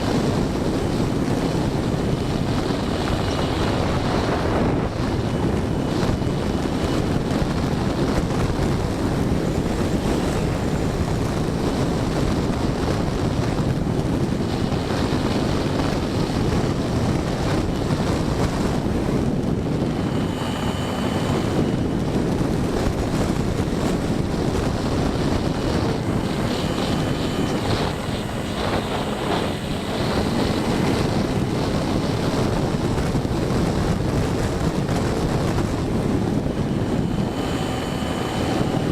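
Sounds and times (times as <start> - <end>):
electric motor and propeller: 0.0 - 38.9
wind rushing over microphone: 0.0 - 38.9.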